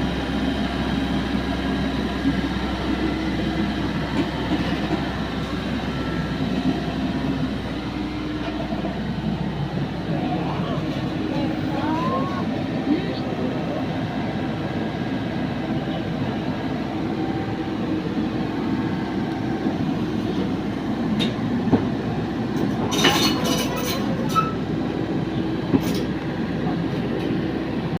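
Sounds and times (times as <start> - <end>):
excavator running: 0.0 - 28.0
sharp metallic clanks and rattles: 22.6 - 24.6.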